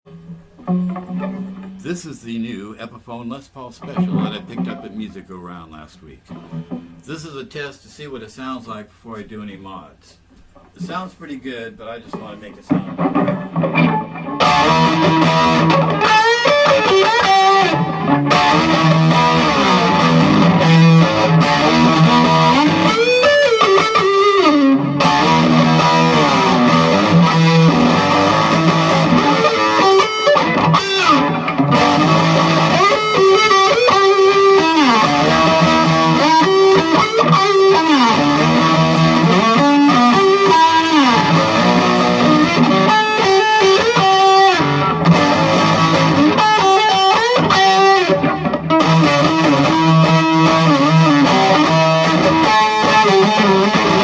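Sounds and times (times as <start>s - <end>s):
electric guitar playing: 0.1s - 7.1s, 12.1s - 54.0s.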